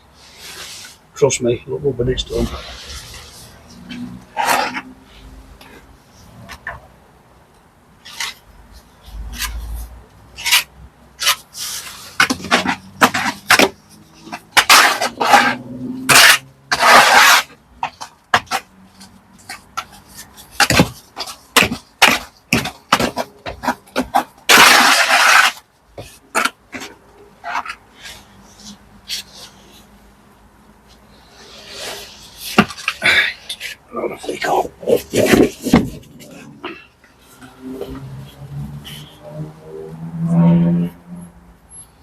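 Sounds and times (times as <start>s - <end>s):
tool rasping on brickwork: 10.4s - 18.6s.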